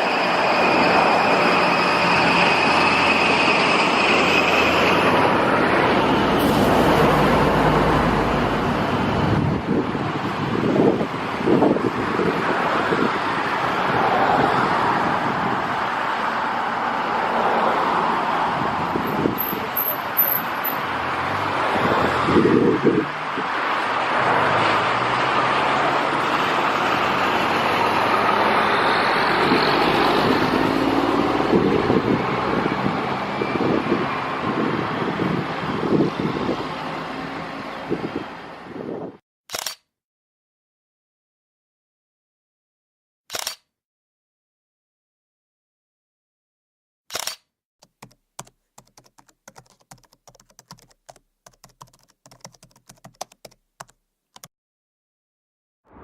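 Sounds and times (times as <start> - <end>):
engine roar: 0.0 - 38.8
wind gusts on microphone: 4.7 - 19.9, 20.8 - 39.2.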